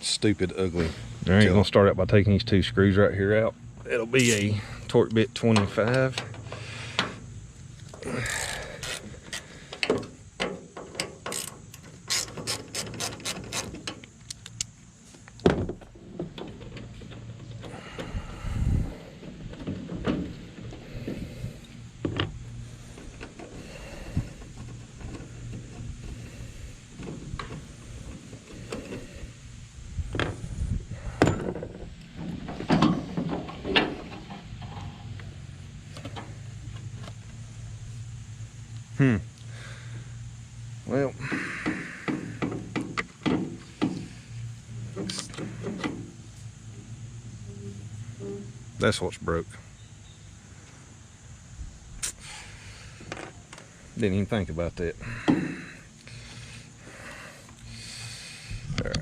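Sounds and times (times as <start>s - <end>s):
low steady hum: 0.0s - 59.0s
hand ratchet clicking: 11.0s - 14.7s.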